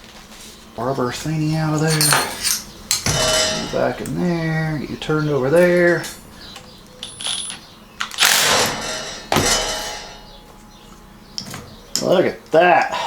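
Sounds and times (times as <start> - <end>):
loud metal clanks: 1.2 - 10.9
metal parts clinking: 1.7 - 10.4.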